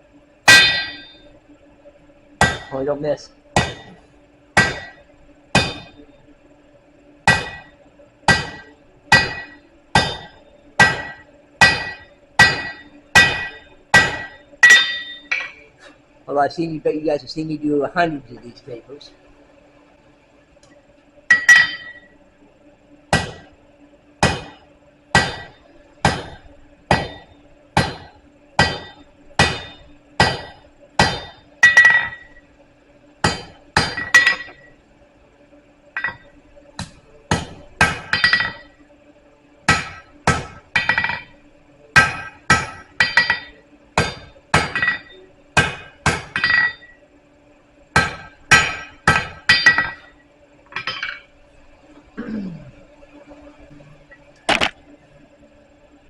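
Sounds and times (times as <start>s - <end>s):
hammer striking steel on anvil: 0.5s - 1.3s, 2.4s - 2.9s, 3.6s - 4.0s, 4.6s - 6.0s, 7.3s - 15.6s, 21.3s - 22.1s, 23.1s - 23.5s, 24.2s - 32.4s, 33.2s - 34.7s, 36.0s - 38.8s, 39.7s - 41.4s, 42.0s - 47.0s, 48.0s - 51.2s.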